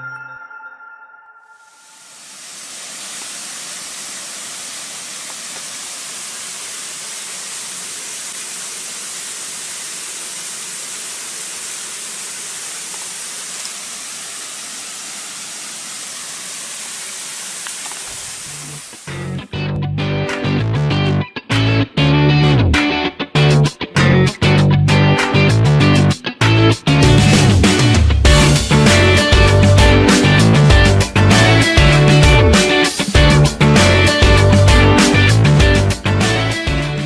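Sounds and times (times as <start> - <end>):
steady hiss: 1.9 - 19.3.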